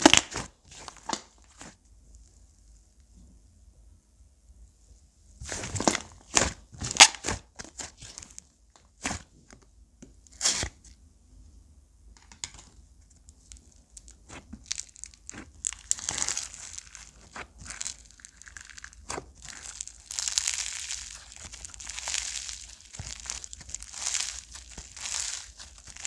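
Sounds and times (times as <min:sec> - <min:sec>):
slime popping and snapping: 0:00.0 - 0:01.3, 0:14.0 - 0:26.0
slime squished by hand: 0:00.0 - 0:01.8, 0:13.5 - 0:26.0.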